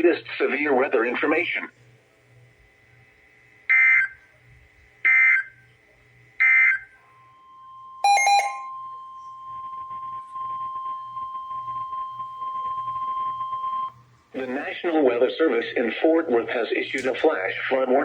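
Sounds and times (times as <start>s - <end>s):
steady alert tone: 8.0s - 8.7s
sharp beep: 8.0s - 8.8s
warbling data tone squawks: 8.0s - 8.8s
faint hiss and hum: 8.6s - 18.0s.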